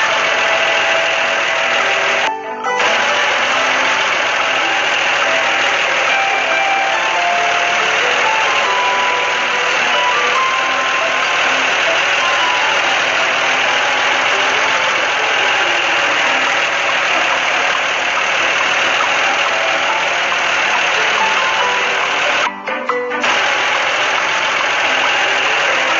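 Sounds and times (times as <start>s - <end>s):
cartoon construction vehicle engine: 0.0s - 25.9s.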